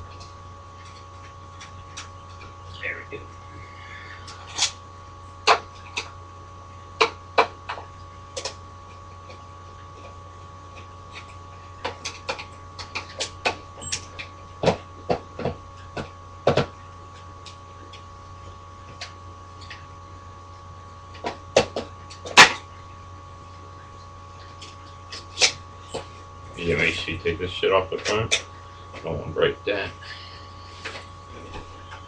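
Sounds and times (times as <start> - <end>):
steady hum: 0.0 - 32.0.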